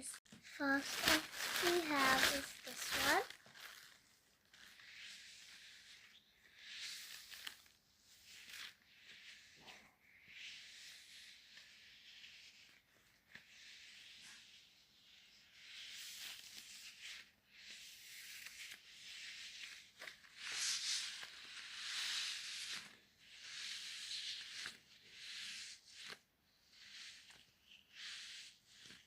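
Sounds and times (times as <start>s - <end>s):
plastic packaging crinkling: 0.6s - 4.7s.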